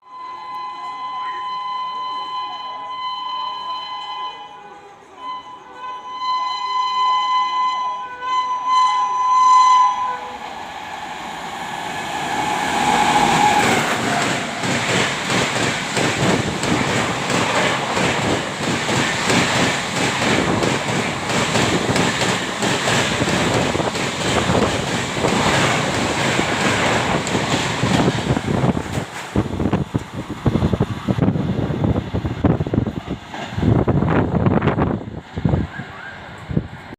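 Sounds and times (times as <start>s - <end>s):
locomotive horn honking: 0.1s - 10.5s
train passing at high speed: 6.1s - 36.9s.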